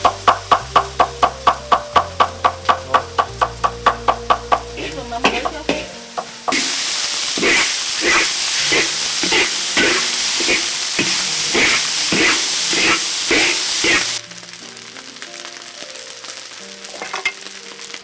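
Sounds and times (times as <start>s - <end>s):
food sizzling in hot pan: 0.0s - 18.0s
ladle scraping pan: 4.8s - 14.2s.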